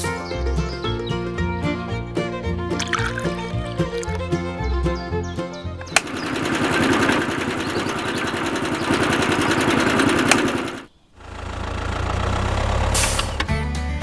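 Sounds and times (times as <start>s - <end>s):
small motor buzzing rattle: 5.8s - 13.5s.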